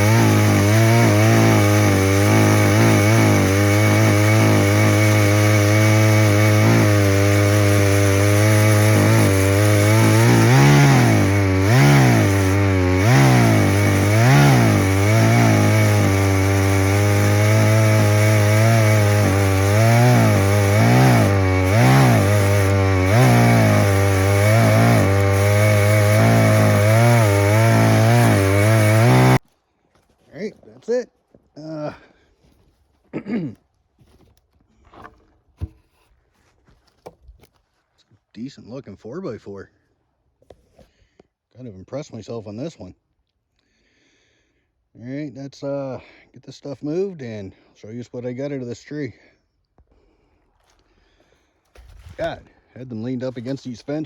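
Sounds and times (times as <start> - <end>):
chainsaw cutting log: 0.0 - 29.5, 50.0 - 54.0.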